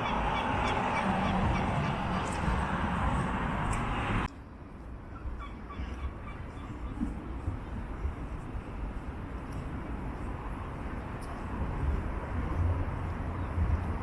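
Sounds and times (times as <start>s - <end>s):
vehicle approaching: 0.0s - 4.3s
road traffic rumble: 0.0s - 14.0s.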